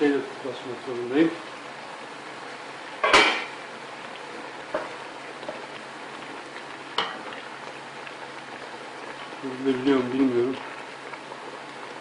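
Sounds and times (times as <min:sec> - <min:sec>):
vegetables sizzling in oil: 0:00.0 - 0:12.0
pot lid clatter: 0:03.0 - 0:03.6.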